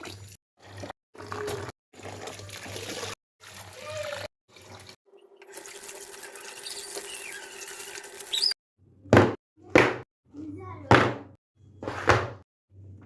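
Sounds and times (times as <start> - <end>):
tap water running into sink: 0.0 - 8.5
high squeaks: 6.4 - 8.6.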